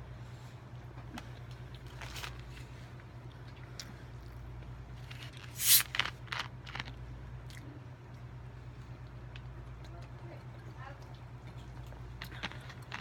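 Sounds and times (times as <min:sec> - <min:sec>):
steady low hum: 0:00.0 - 0:13.0
food crunching: 0:09.0 - 0:13.0.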